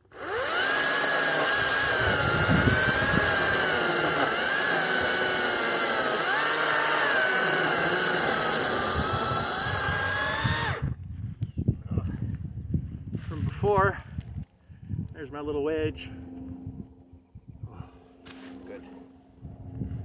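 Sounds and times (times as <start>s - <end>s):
electric chainsaw cutting wood: 0.0s - 11.0s.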